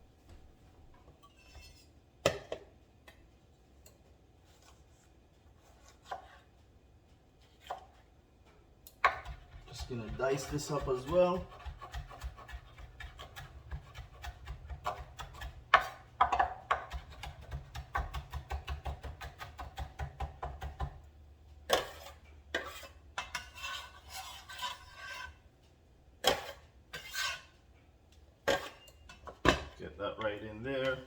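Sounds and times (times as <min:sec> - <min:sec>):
knife chopping on cutting board: 0:09.0 - 0:21.0.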